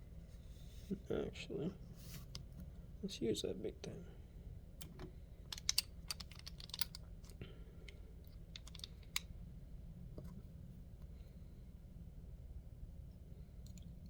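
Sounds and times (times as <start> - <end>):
low steady hum: 0.0 - 14.0
lock picking tools clicking: 5.5 - 7.0, 7.9 - 9.2.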